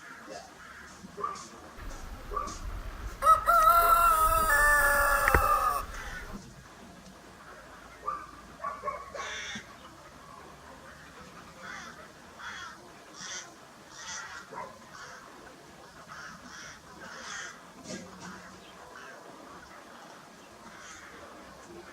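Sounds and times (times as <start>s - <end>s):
faint background hiss: 1.5s - 8.6s
birds calling: 1.8s - 6.4s.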